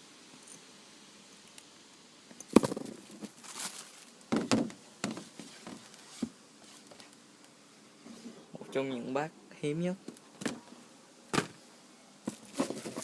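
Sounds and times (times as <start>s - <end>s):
paper rustling: 2.7s - 4.2s, 12.3s - 13.0s
knocks on cardboard box: 4.3s - 5.2s.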